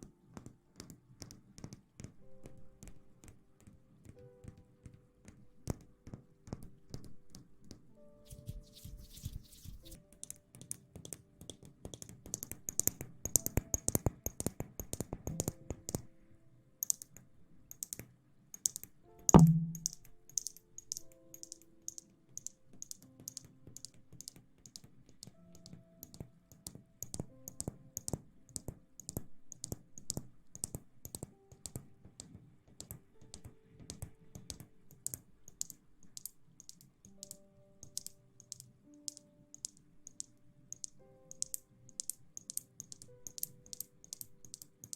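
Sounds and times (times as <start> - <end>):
loud thump: 19.4 - 19.9.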